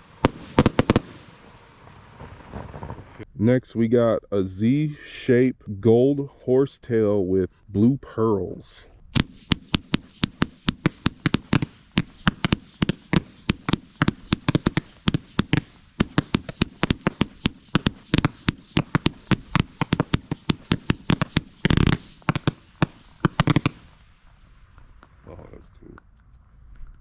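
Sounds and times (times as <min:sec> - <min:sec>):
firework cake firing sharp pops: 0:00.0 - 0:03.2, 0:09.1 - 0:25.2.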